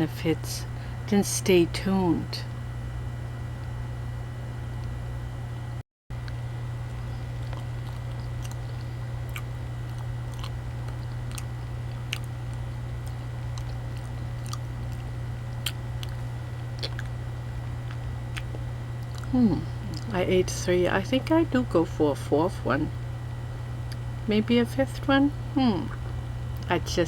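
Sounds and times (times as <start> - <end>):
steady low hum: 0.0 - 27.0
person chewing: 6.3 - 17.2, 17.8 - 20.1
wet mouth clicks: 16.8 - 17.1.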